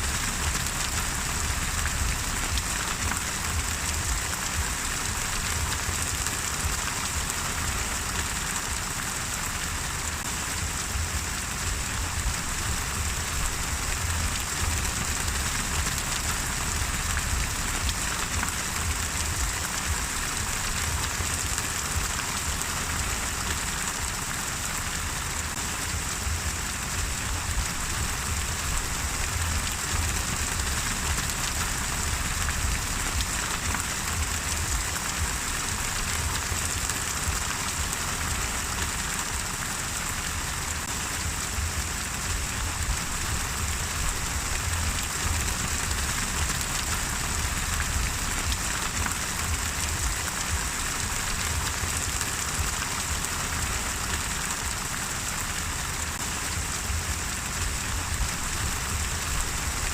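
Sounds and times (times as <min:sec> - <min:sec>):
low rumble: 0:00.0 - 0:06.8, 0:10.5 - 0:22.1, 0:25.7 - 0:37.4, 0:41.2 - 0:51.9
steady rain falling: 0:00.0 - 0:59.9.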